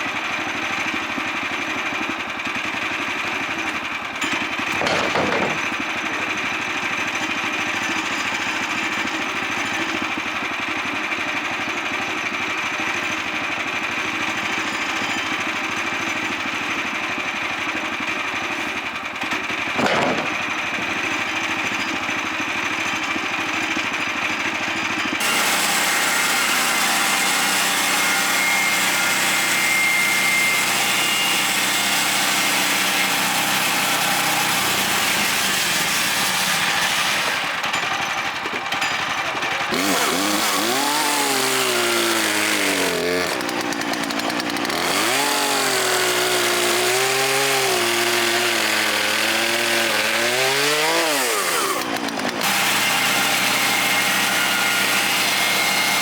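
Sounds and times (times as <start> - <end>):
sawmill petrol engine running: 0.0 - 56.0
bandsaw cutting wood: 3.0 - 10.0, 18.4 - 21.8, 25.2 - 56.0.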